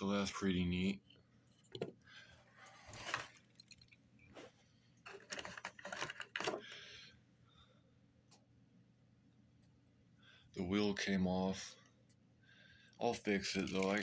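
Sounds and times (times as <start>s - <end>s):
toy cars and packaging handled: 1.5s - 6.8s, 13.2s - 14.0s.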